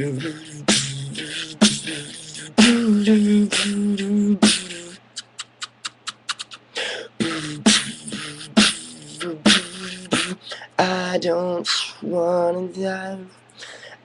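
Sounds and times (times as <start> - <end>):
beatboxing: 0.0 - 12.0
crisp mouth clicks: 5.1 - 6.7.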